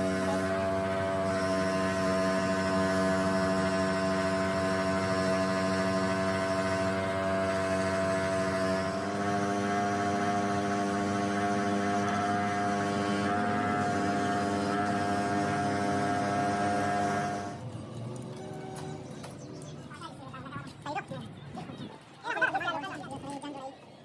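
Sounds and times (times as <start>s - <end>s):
steady machine hum: 0.0s - 17.8s.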